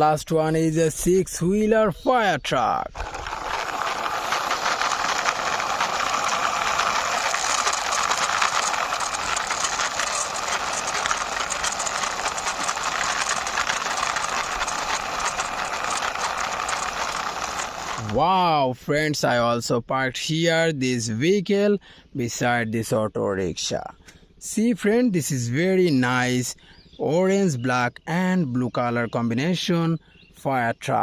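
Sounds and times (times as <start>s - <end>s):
toy truck wheels rolling: 0.9s - 18.4s.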